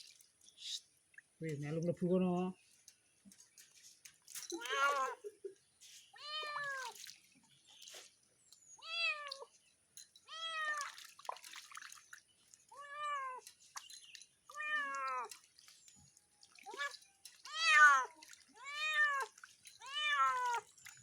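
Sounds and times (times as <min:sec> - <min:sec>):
water clicks and drips: 0:00.0 - 0:02.0, 0:02.6 - 0:05.6, 0:06.2 - 0:21.0
cat meowing: 0:04.6 - 0:05.2, 0:06.2 - 0:06.9, 0:08.8 - 0:09.4, 0:12.7 - 0:13.4, 0:14.5 - 0:15.3, 0:16.7 - 0:20.6.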